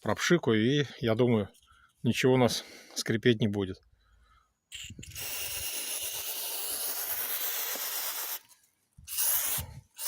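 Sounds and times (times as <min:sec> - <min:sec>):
aerosol can spraying: 0:05.1 - 0:08.5, 0:09.1 - 0:10.0.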